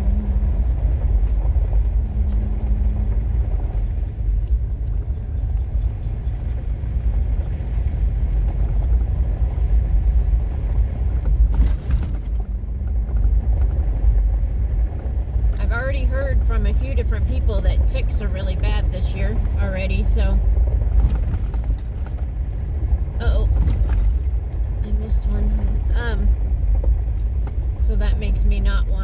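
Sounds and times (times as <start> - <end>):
truck driving on dirt road: 0.0 - 29.0
rattling noise: 10.6 - 28.9.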